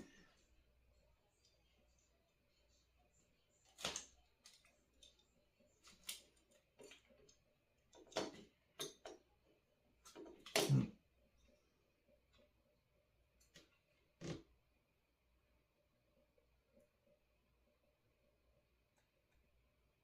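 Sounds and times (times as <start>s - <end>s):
small tools clicking and tapping: 3.6s - 9.4s.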